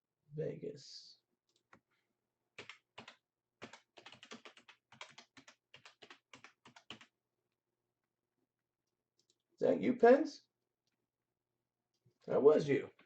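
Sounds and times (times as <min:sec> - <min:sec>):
typing on computer keyboard: 0:02.6 - 0:07.1.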